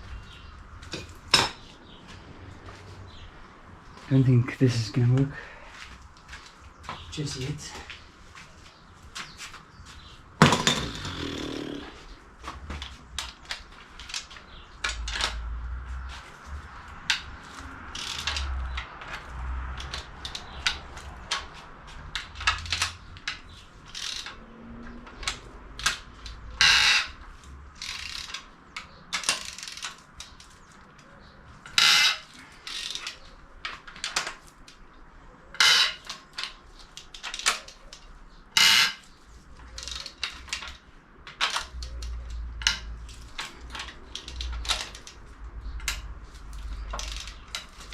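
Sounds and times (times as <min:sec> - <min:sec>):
ratchet wrench rasping: 0:27.8 - 0:28.4, 0:46.6 - 0:47.9.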